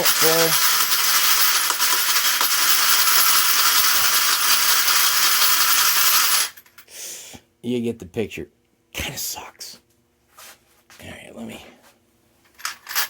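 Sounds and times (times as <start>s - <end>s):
brass cases rattling in plastic tray: 0.0s - 6.6s.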